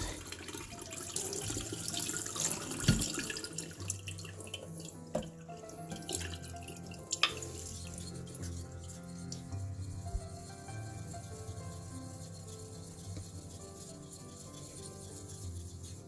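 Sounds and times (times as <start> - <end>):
sharpening stone scraping on plate: 7.3 - 16.0.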